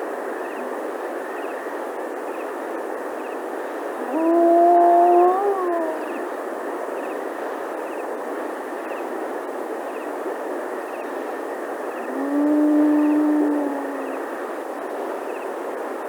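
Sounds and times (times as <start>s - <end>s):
long animal calls: 4.0s - 6.3s, 12.0s - 14.4s.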